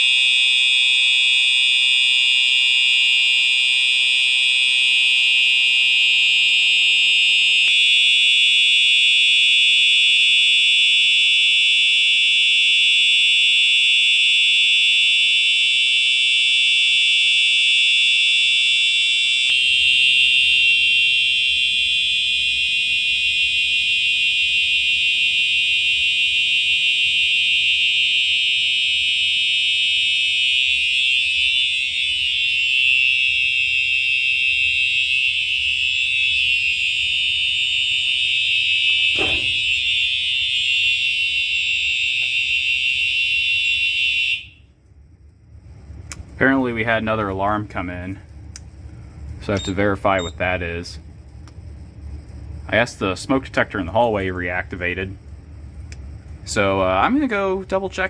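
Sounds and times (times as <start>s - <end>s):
high-pitched fire alarm: 0.0s - 48.3s, 48.9s - 58.0s.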